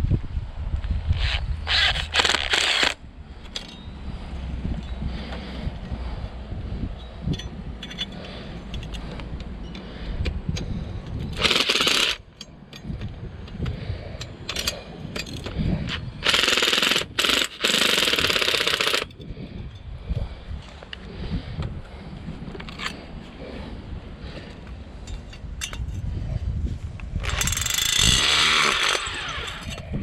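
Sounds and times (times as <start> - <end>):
hammering power tool: 27.2 - 29.7.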